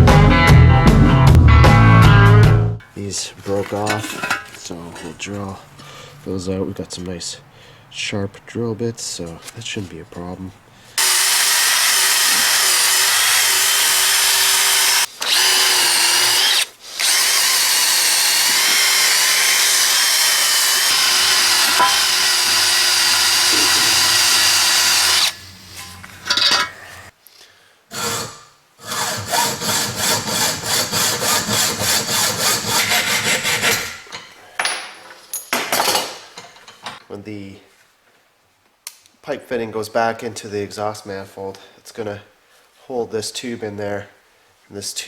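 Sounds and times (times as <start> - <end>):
electric drill drilling metal: 11.0 - 25.4.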